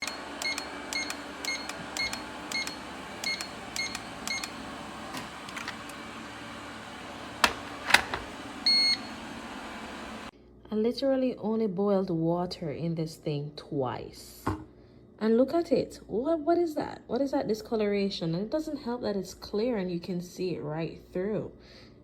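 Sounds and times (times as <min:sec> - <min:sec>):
kettle panel beeping: 0:00.0 - 0:10.3.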